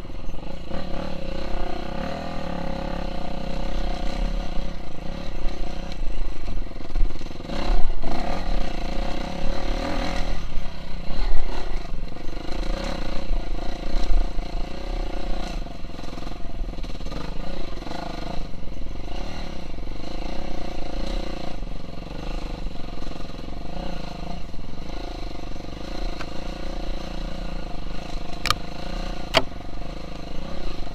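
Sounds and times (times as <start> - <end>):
dirt bike engine revving: 0.0 - 30.9.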